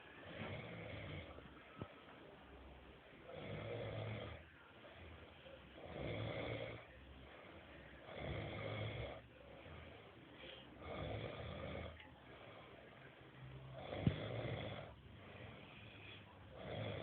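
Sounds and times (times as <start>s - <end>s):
quiet breathing: 0.0s - 17.0s
person snoring: 0.2s - 1.4s, 3.3s - 4.5s, 5.8s - 7.0s, 8.0s - 9.3s, 10.8s - 12.0s, 13.7s - 17.0s.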